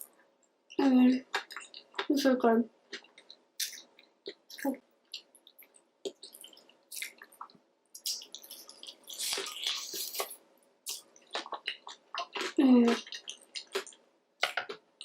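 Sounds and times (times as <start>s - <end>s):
wet smacking and chewing: 1.3s - 2.1s, 2.9s - 14.8s.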